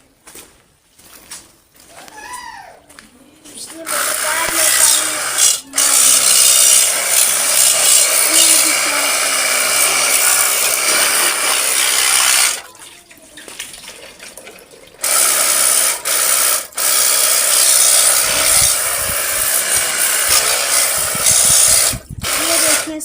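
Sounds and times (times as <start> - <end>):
pressure washer spraying: 3.8 - 12.7, 15.0 - 23.0.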